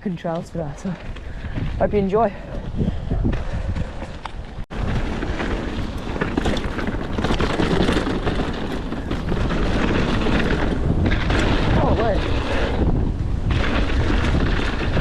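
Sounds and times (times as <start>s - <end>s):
wind buffeting microphone: 0.0s - 15.0s
bike clicks and rattles: 2.4s - 15.0s
tyres rumbling on dirt: 3.3s - 15.0s.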